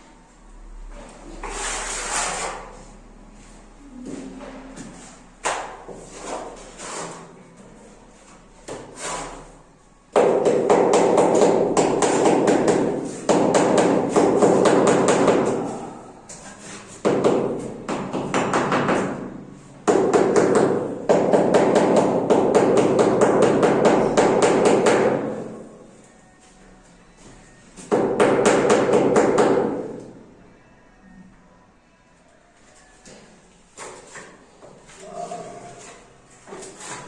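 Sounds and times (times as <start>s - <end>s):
fast repeated hammering: 10.1s - 15.7s, 17.0s - 25.4s, 27.9s - 29.9s.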